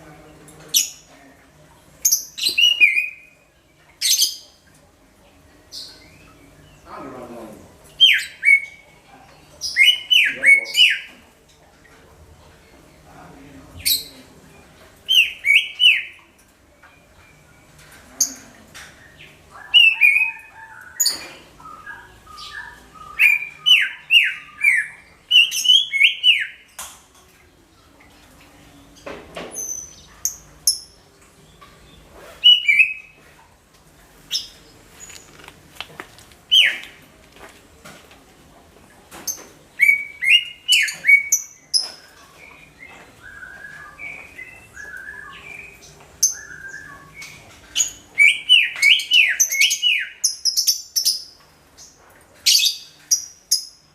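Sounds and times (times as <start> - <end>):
bird singing whistled notes: 42.4 - 47.4.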